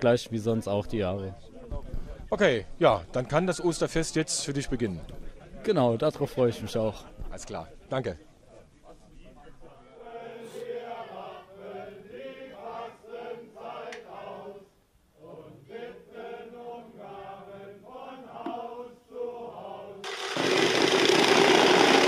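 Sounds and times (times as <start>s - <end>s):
voices chanting sing-song: 9.6s - 20.3s.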